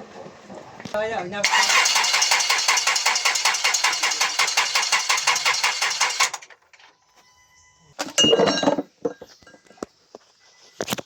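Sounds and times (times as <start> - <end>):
diesel engine cranking: 1.4 - 6.7.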